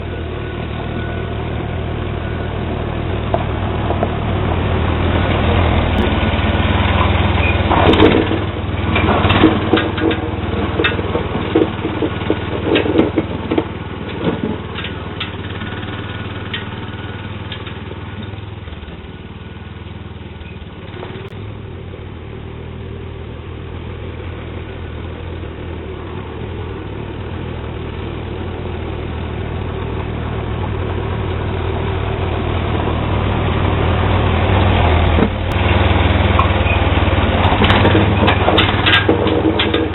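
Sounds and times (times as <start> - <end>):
garden tractor engine running: 0.0 - 39.9
sharp clanks and knocks: 3.3 - 4.2, 5.9 - 18.9, 35.1 - 39.9.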